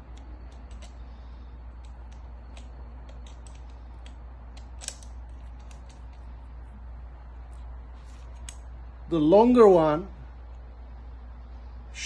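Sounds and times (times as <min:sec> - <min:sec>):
joystick parts clicking and tapping: 0:00.1 - 0:01.0, 0:01.8 - 0:06.1.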